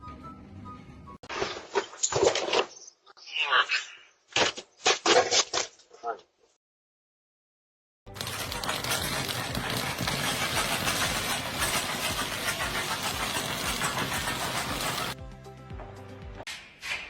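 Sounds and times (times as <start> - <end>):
heavy machine rattling clatter: 8.1 - 15.2.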